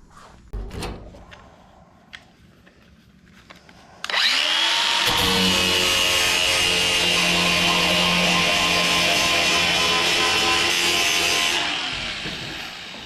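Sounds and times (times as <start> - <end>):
power grinder grinding metal: 4.1 - 13.0.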